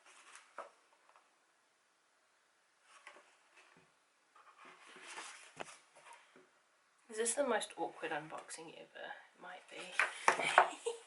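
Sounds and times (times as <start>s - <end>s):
paper rustling: 0.0s - 1.1s, 2.8s - 6.3s
page turning: 0.0s - 1.2s.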